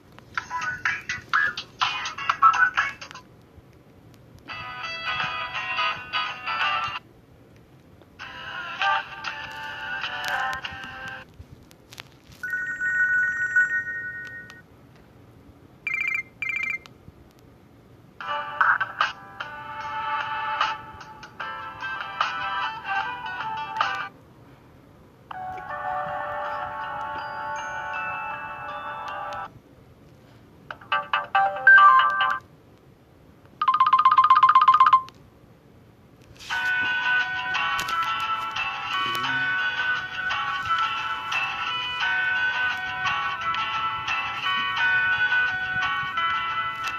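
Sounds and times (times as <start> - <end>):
phone alert melody: 12.4 - 14.6, 15.9 - 16.8, 25.4 - 29.5, 30.9 - 32.4, 33.6 - 35.1
two-pulse phone beep: 12.4 - 14.6, 15.9 - 16.9, 33.6 - 35.1
warbling electronic ringtone trill: 12.4 - 14.6, 15.9 - 16.8, 33.6 - 35.1.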